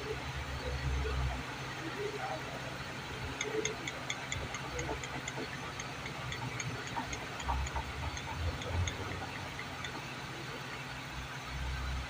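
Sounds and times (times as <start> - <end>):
faint light ticking: 3.2 - 10.1.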